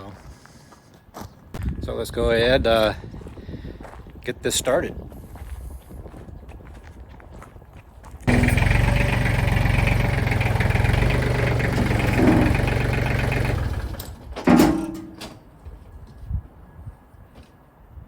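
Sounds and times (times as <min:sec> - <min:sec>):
engine running: 0:08.3 - 0:15.4.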